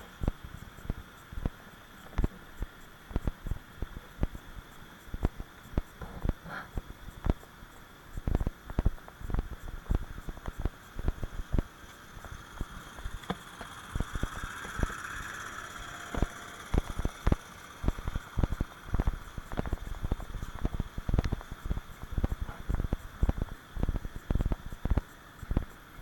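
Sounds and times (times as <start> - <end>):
background hiss: 0.0 - 26.0
footsteps walking: 16.2 - 25.0.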